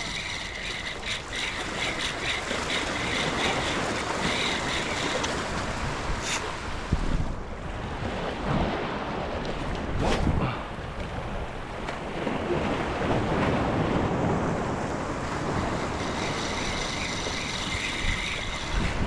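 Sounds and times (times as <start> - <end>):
high-pitched whir: 0.0 - 6.6, 15.3 - 19.0
surf washing against a wall: 0.0 - 7.4, 11.8 - 19.0
wind buffeting microphone: 0.0 - 19.0.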